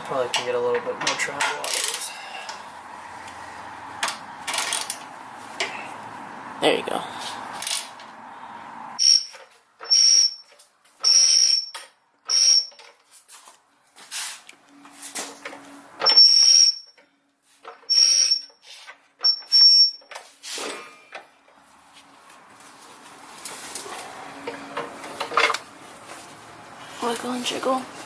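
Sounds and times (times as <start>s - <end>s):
ratchet wrench rasping: 1.6s - 2.6s, 4.5s - 5.0s.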